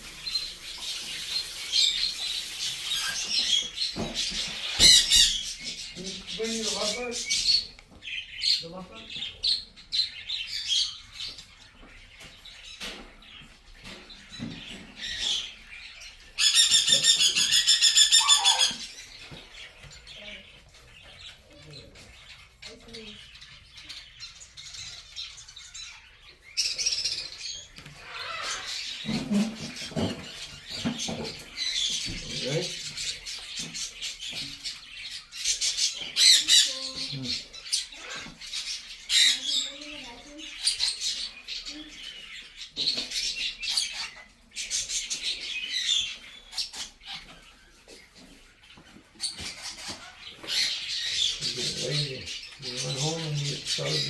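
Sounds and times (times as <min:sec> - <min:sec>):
macaw squawking: 0:16.4 - 0:19.0
parrot chick begging call: 0:16.5 - 0:18.8.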